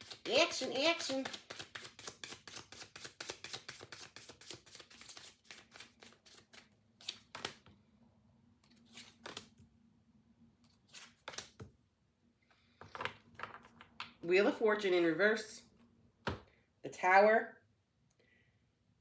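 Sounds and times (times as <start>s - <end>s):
cards being shuffled: 0.0s - 7.7s, 8.7s - 9.6s, 10.7s - 11.7s.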